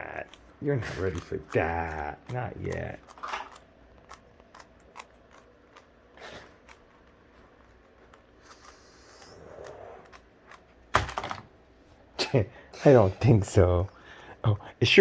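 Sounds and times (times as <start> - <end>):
plastic puzzle clicking: 0.2 - 7.2.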